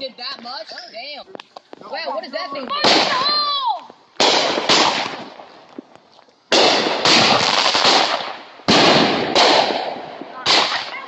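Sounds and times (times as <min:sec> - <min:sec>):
fireworks bangs: 0:02.6 - 0:11.0.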